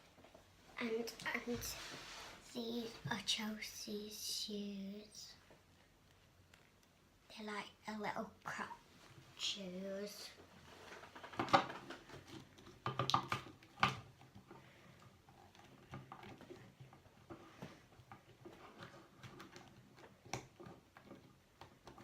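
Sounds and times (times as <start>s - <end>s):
plastic rustling: 10.3s - 22.0s.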